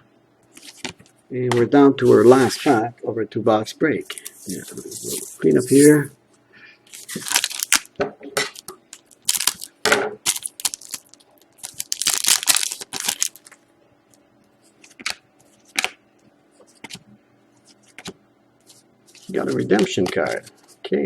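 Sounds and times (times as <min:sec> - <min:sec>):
foil wrappers crinkling and tearing: 0:06.9 - 0:07.9, 0:08.5 - 0:13.6.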